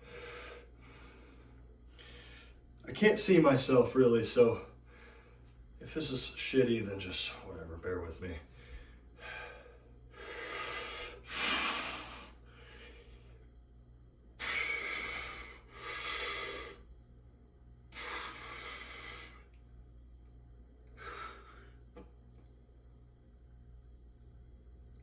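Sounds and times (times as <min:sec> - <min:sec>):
man breathing heavily: 0:00.0 - 0:02.6, 0:04.8 - 0:05.6, 0:08.5 - 0:13.5, 0:14.4 - 0:16.9, 0:17.9 - 0:19.5, 0:20.9 - 0:21.9.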